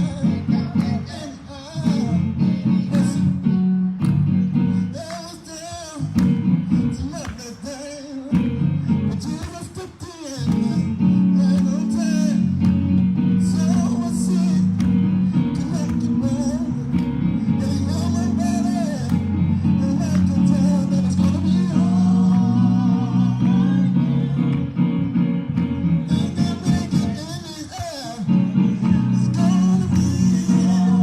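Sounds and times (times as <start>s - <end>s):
instrumental accompaniment: 10.5s - 27.4s
person singing: 13.4s - 24.9s, 26.1s - 31.0s.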